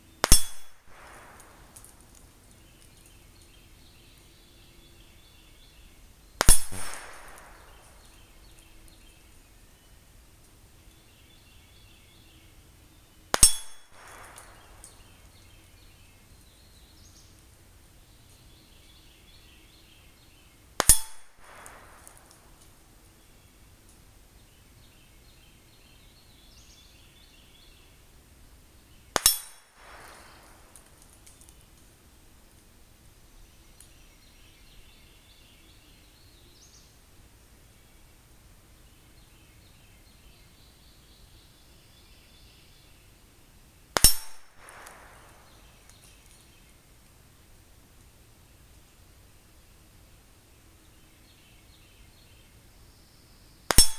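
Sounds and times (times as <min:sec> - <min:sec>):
bird chirping: 0:00.0 - 0:10.0, 0:10.9 - 0:17.4
rifle shots: 0:00.2 - 0:02.2, 0:06.4 - 0:08.6, 0:13.3 - 0:15.4, 0:20.8 - 0:22.8, 0:29.2 - 0:31.1, 0:44.0 - 0:46.0.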